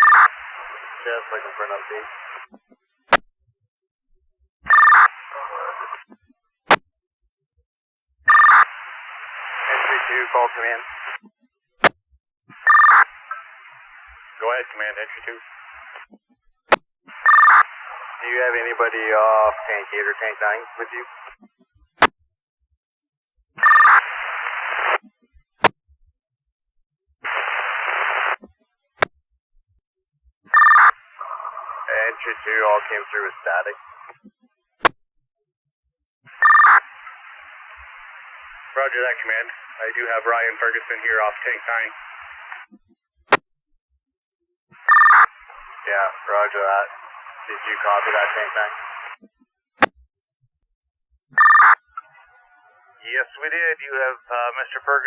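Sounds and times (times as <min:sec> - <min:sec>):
two-tone radio beep: 0:00.0 - 0:00.4, 0:04.7 - 0:06.2, 0:08.3 - 0:08.7, 0:12.6 - 0:13.2, 0:17.2 - 0:17.7, 0:23.6 - 0:24.0, 0:30.5 - 0:34.2, 0:36.4 - 0:36.9, 0:44.9 - 0:46.6, 0:51.4 - 0:55.0
garbled radio transmission hiss: 0:00.0 - 0:02.6, 0:05.0 - 0:06.2, 0:08.4 - 0:11.2, 0:12.7 - 0:16.1, 0:17.1 - 0:21.4, 0:30.6 - 0:34.2, 0:36.4 - 0:42.7, 0:44.9 - 0:49.2, 0:51.4 - 0:55.0
two-tone radio data burst: 0:17.2 - 0:21.3, 0:44.9 - 0:49.1, 0:51.4 - 0:55.0.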